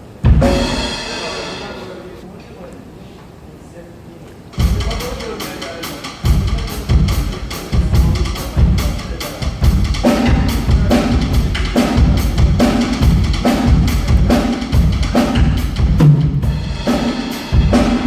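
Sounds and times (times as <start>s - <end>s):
cymbal strikes: 0.2s - 2.2s, 4.5s - 18.0s
bass drum thumps: 6.3s - 16.8s.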